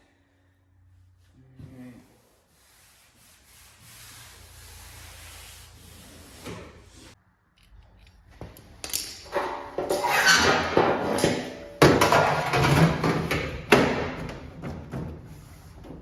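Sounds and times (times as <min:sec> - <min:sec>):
sheet metal scraping: 0:09.2 - 0:16.0.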